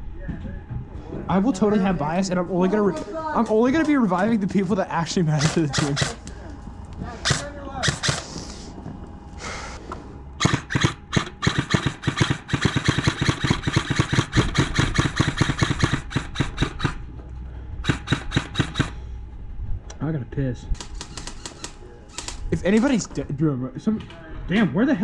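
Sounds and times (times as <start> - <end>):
sharp clicks and rattles: 10.4 - 17.0
low steady rumble: 16.8 - 21.0.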